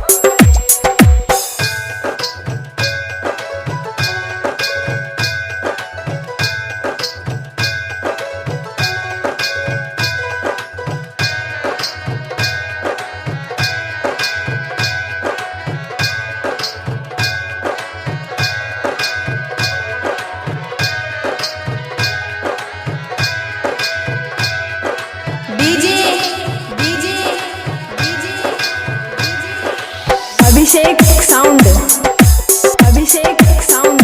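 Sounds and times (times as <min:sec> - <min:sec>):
tabla and drum beat: 0:00.0 - 0:34.0
sustained high melodic tone: 0:25.5 - 0:34.0.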